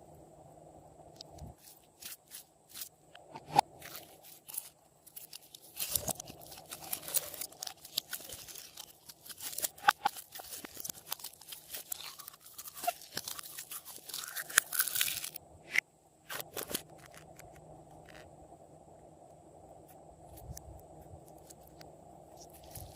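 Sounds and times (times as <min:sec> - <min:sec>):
crackling and crunching clicks: 0:01.1 - 0:18.3.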